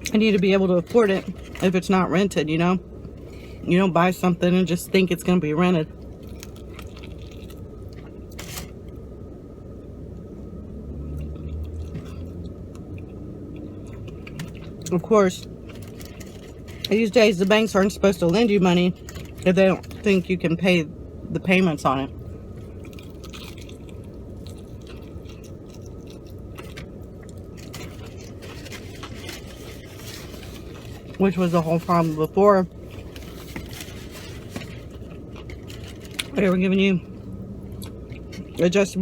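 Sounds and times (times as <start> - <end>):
steady low hum: 0.0 - 39.0
steady low rumble: 0.0 - 39.0
person chewing food: 6.0 - 8.4, 11.1 - 16.9, 22.4 - 31.2, 37.1 - 38.6.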